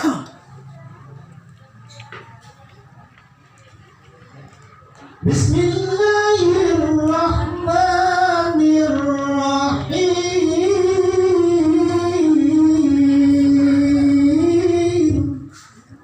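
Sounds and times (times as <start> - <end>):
person chanting a recitation: 5.0 - 16.0.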